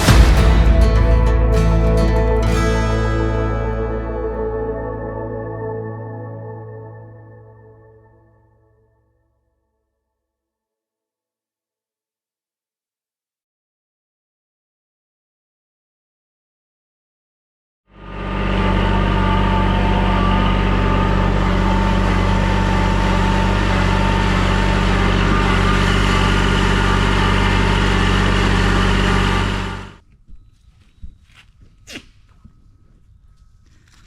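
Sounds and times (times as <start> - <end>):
engine running steadily: 18.0 - 30.0.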